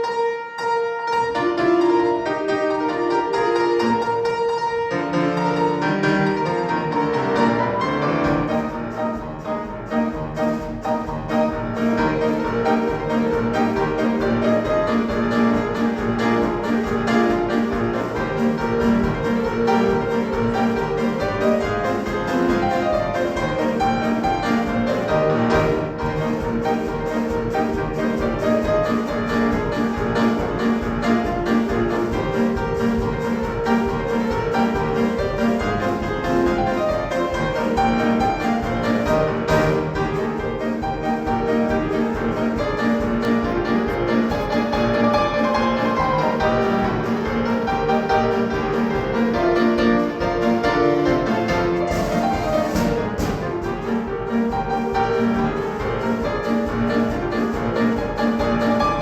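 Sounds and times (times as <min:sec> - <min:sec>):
piano and drums march music: 0:00.0 - 0:59.0.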